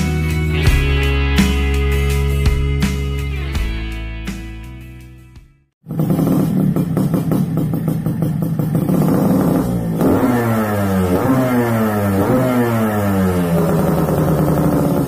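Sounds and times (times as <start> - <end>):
music: 0.0 - 5.8
two-stroke engine revving: 5.8 - 15.0.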